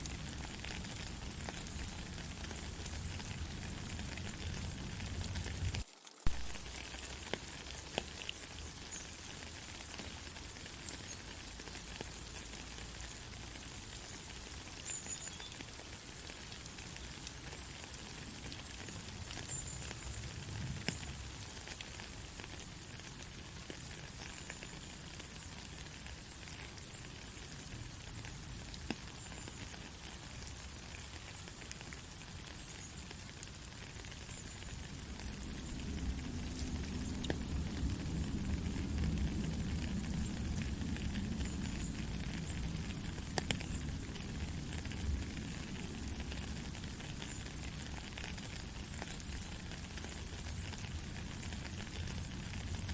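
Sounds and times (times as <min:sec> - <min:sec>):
steady rain hissing: 0:00.0 - 0:52.9.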